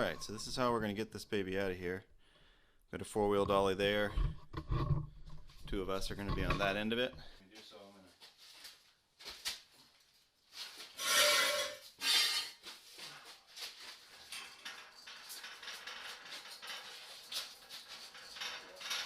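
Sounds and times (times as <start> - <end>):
metal scraping clatters: 0.0 - 0.8, 3.1 - 7.4, 11.0 - 12.6, 14.1 - 19.0
steel frame clanking and rattling: 3.3 - 7.3, 14.2 - 19.0.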